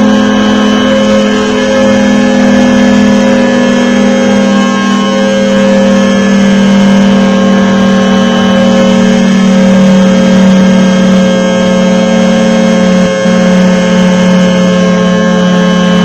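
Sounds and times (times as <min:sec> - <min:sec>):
two-tone warning siren: 0:00.0 - 0:16.0.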